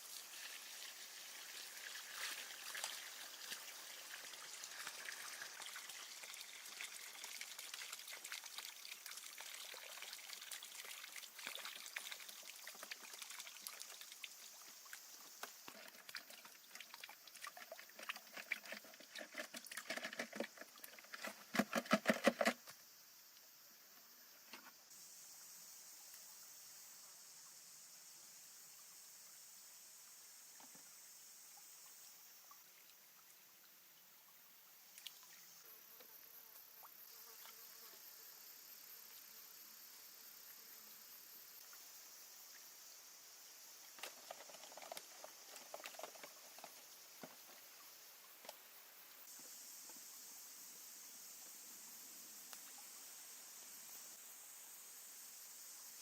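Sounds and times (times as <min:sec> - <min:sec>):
liquid pouring and trickling: 0:00.0 - 0:21.3.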